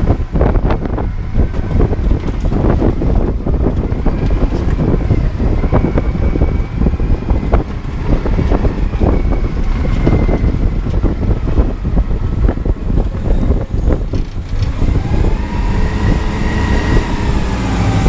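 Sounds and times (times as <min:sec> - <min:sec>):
tractor diesel engine running: 0:00.0 - 0:18.0
wind buffeting microphone: 0:00.0 - 0:18.0
rattles and knocks: 0:13.0 - 0:15.1.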